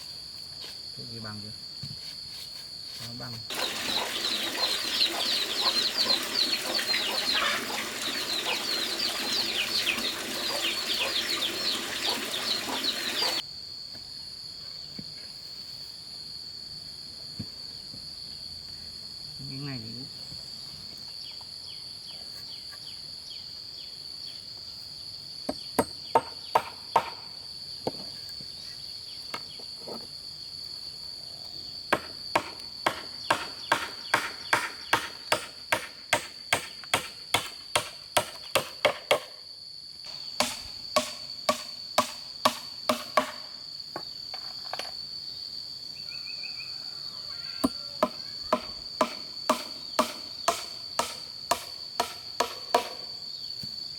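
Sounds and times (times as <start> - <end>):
insects droning: 0.0 - 53.9
hand tool striking bamboo: 25.5 - 27.2, 31.9 - 39.4, 40.1 - 43.5, 47.6 - 53.1.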